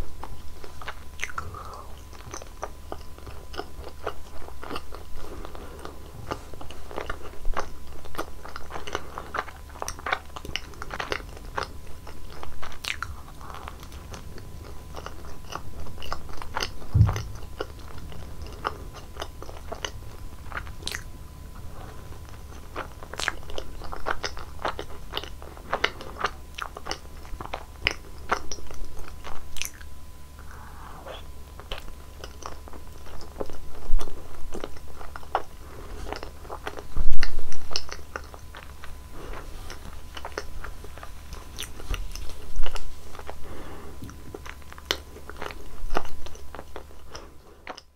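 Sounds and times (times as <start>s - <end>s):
crunchy biting and chewing: 0.0s - 47.9s
steady low hum: 0.0s - 47.9s
low thump: 16.9s - 17.5s.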